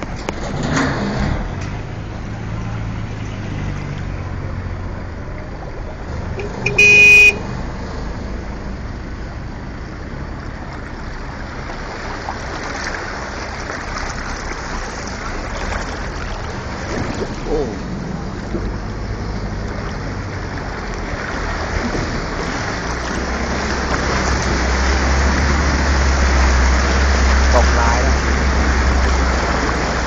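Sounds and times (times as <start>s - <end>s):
low engine hum: 0.0s - 30.0s
traffic noise: 0.0s - 30.0s
vehicle horn toot: 6.4s - 7.5s.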